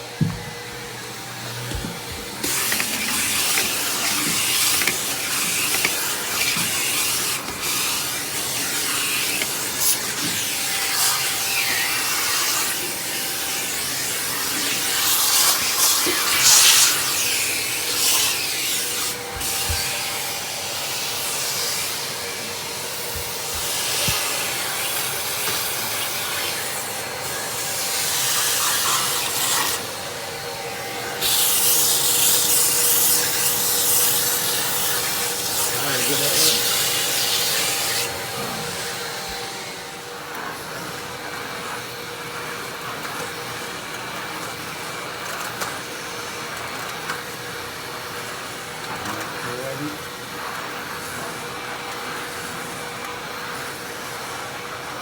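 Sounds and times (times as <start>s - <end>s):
vacuum nozzle rubbing on floor: 0.0s - 29.9s, 31.0s - 43.6s
vacuum cleaner running: 0.0s - 55.0s.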